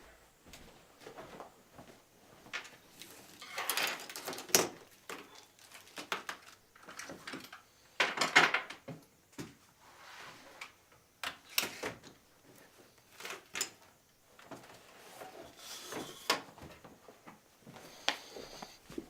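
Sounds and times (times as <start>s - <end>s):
objects knocking and clattering: 3.4s - 9.5s.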